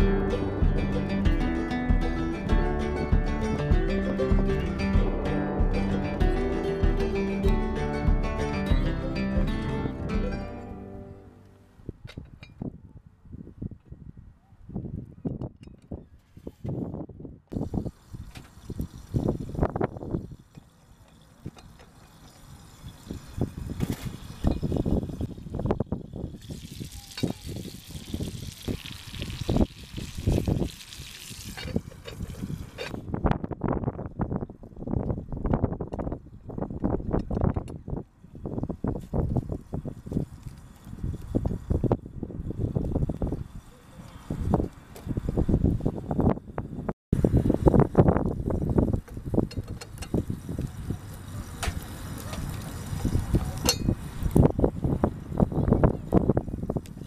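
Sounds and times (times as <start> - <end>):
wind buffeting microphone: 11.8 - 20.6, 22.8 - 57.0.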